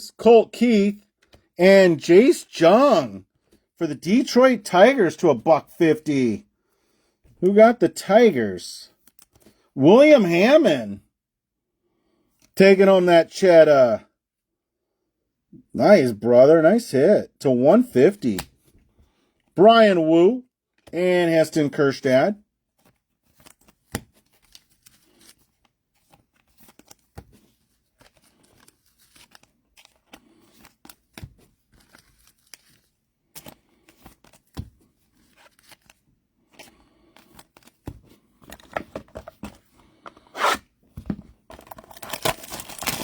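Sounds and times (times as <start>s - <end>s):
cards sliding and tapping: 22.8s - 41.3s
foil wrapper tearing and crinkling: 41.6s - 43.0s.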